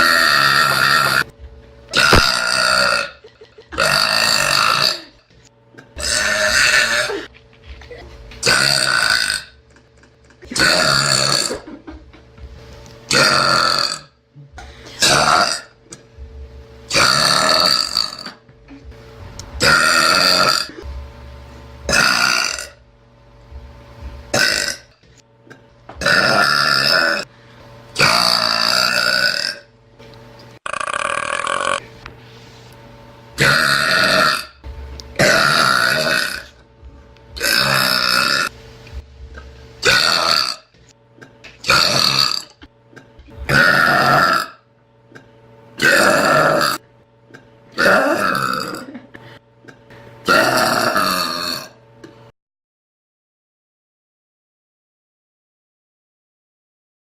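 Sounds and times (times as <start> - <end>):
person belching: 0.0 - 1.3, 1.9 - 5.2, 5.8 - 7.3, 8.4 - 9.6, 10.4 - 11.8, 13.1 - 14.2, 15.0 - 15.8, 16.9 - 18.4, 19.6 - 20.9, 21.9 - 22.8, 24.3 - 24.9, 25.5 - 27.3, 28.0 - 29.7, 30.6 - 31.8, 33.4 - 34.6, 35.2 - 36.6, 37.4 - 38.5, 39.8 - 49.1, 49.7 - 51.8.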